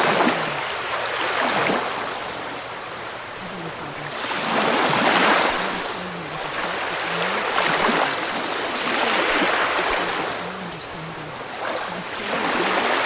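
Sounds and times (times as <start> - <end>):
ocean waves washing ashore: 0.0 - 13.0.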